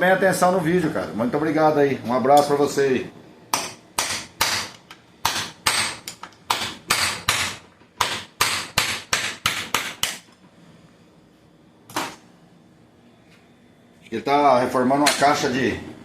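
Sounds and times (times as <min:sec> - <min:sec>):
hammer striking metal: 0:03.5 - 0:10.2.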